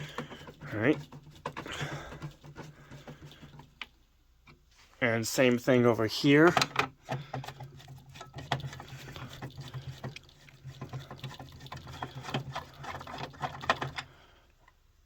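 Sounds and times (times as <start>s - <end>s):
plastic clicks and rattles: 6.5s - 14.1s.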